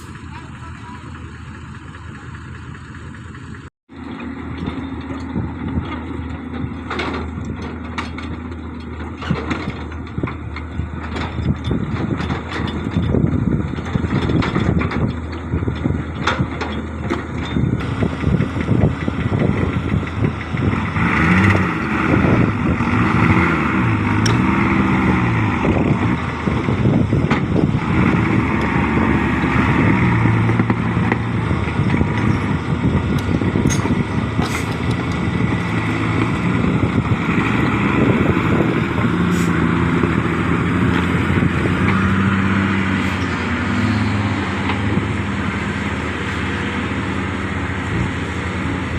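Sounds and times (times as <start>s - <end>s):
excavator diesel engine revving: 0.0s - 48.9s
sharp metal clanks: 33.2s - 35.8s.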